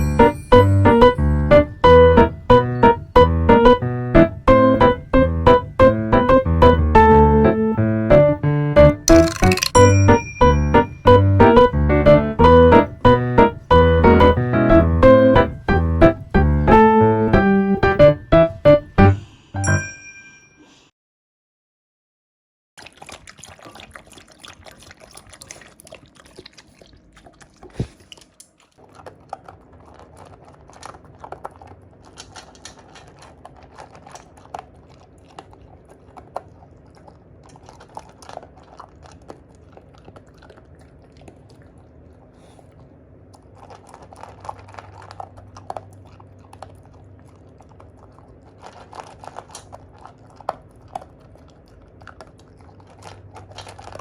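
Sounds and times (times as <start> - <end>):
dog chewing dry kibble: 22.8 - 54.0.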